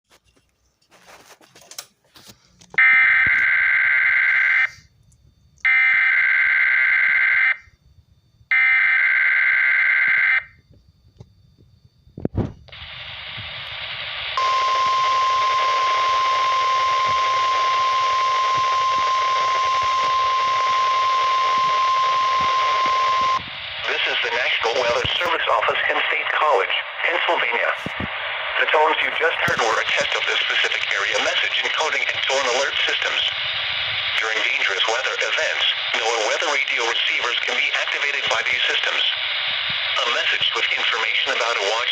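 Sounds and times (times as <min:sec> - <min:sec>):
steady warning alarm tone: 0:02.6 - 0:27.8
radio hiss: 0:12.3 - 0:41.9
warbling digital data tones: 0:12.8 - 0:27.6.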